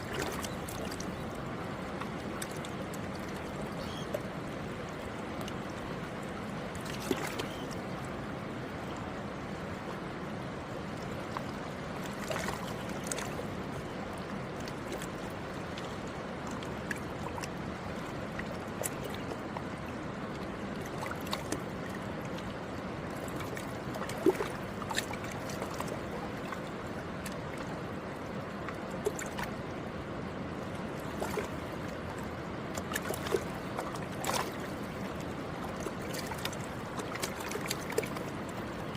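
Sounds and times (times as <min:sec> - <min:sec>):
sharp splashes: 0:00.0 - 0:01.0
river flowing: 0:00.0 - 0:38.9.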